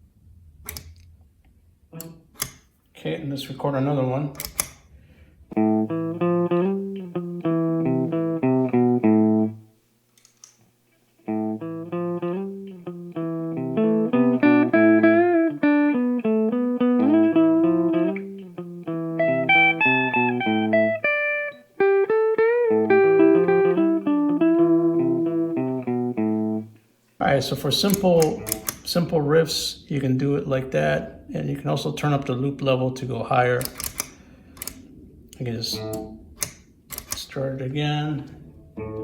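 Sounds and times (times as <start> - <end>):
clean electric guitar riff: 5.6 - 9.6, 11.2 - 26.8, 38.4 - 39.0
higher guitar single notes: 5.6 - 9.6, 11.2 - 26.8, 38.6 - 39.0.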